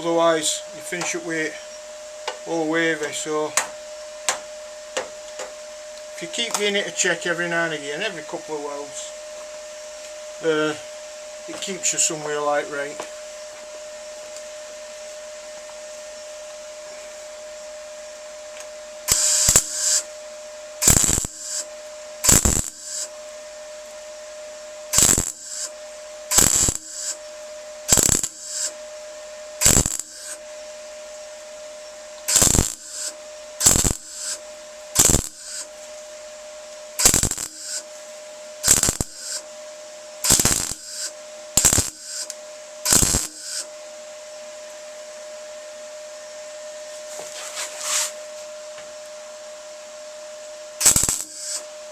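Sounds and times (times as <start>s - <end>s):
steady hum: 0.0s - 51.9s
tack welding bursts: 19.1s - 20.1s, 20.8s - 23.2s, 24.9s - 27.2s, 27.9s - 28.8s, 29.6s - 30.4s, 32.2s - 35.8s, 37.0s - 37.9s, 38.6s - 39.5s, 40.2s - 43.7s, 50.8s - 51.7s.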